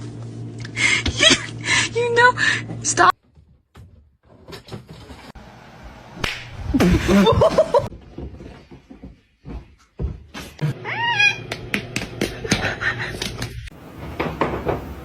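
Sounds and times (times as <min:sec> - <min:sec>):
cat meowing: 0:10.8 - 0:11.5
sharp knocks and thumps: 0:14.0 - 0:15.0.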